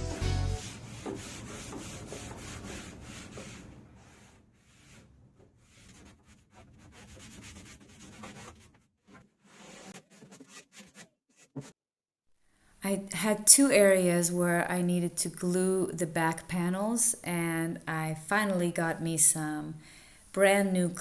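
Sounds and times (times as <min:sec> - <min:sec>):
sanding on wood: 0:00.0 - 0:05.0, 0:05.6 - 0:08.6.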